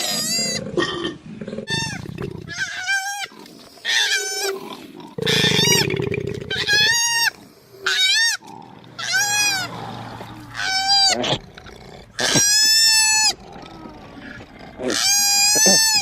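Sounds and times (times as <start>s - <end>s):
koala squealing cries: 1.7s - 4.5s, 6.5s - 8.4s, 9.0s - 9.7s, 10.5s - 11.2s, 12.2s - 13.4s, 14.9s - 16.0s.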